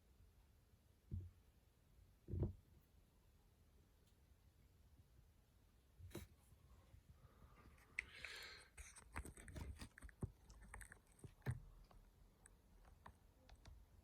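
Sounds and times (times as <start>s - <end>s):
small clicks and taps: 8.8s - 13.8s.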